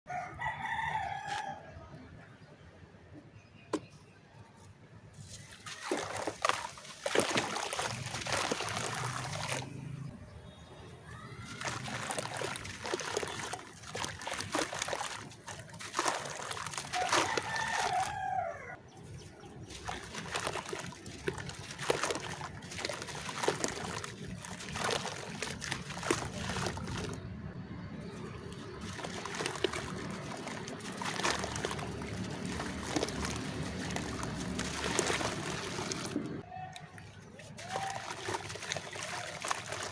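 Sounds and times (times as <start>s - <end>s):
rooster crowing: 0.1s - 1.8s, 17.0s - 18.8s.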